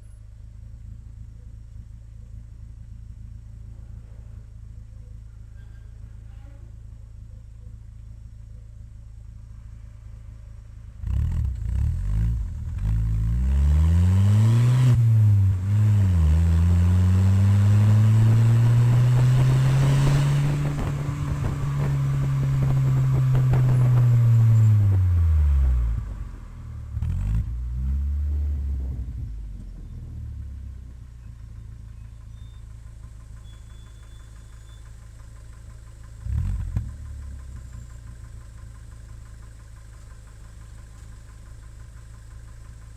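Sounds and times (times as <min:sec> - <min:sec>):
car engine revving: 0:10.9 - 0:29.7.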